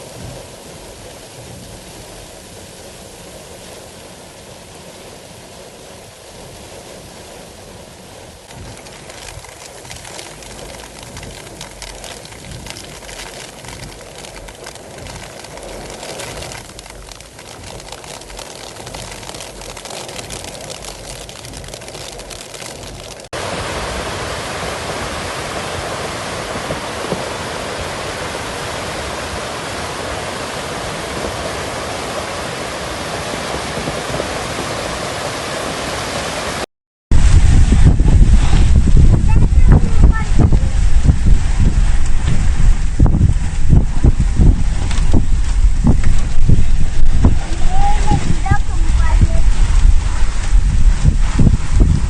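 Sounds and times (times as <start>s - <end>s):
wind buffeting microphone: 0.0s - 36.4s, 37.1s - 52.0s
heavy rain rushing: 0.0s - 52.0s
ticking drops: 8.5s - 23.3s.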